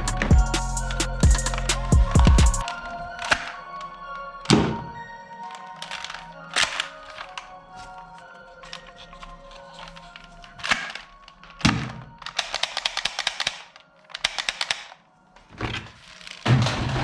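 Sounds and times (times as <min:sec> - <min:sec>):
toy guns firing: 0:11.7 - 0:15.0.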